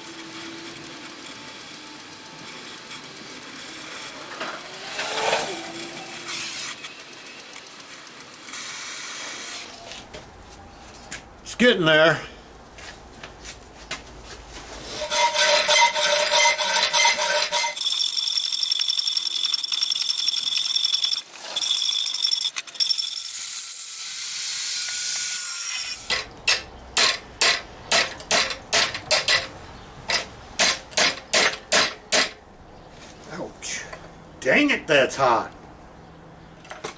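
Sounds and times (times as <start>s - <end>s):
power tool grinding metal: 0.0s - 9.8s, 15.9s - 26.3s.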